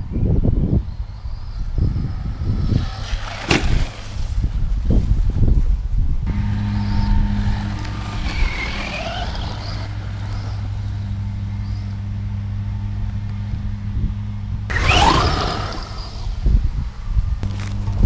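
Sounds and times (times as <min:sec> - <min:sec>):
motor humming: 0:06.3 - 0:18.0.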